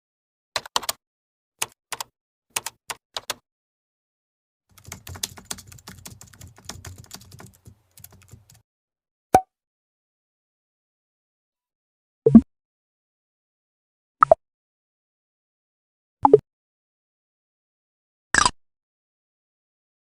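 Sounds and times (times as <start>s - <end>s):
keyboard typing: 0.6s - 1.0s, 1.6s - 3.4s, 4.7s - 8.6s.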